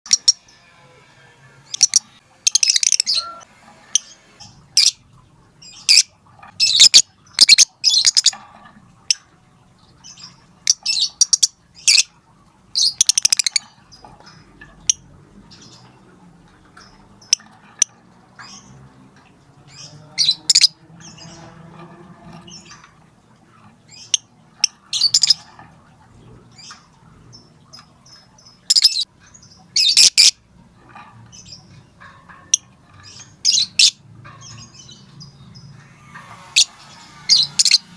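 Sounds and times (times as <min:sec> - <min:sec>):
lovebird calling: 0:01.7 - 0:08.4, 0:19.7 - 0:22.9.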